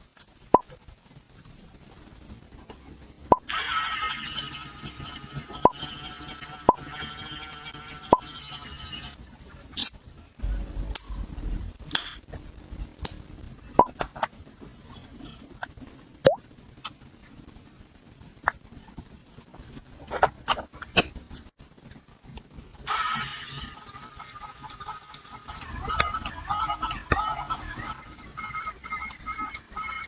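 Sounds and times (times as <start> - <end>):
low thud: 10.4 - 12.5.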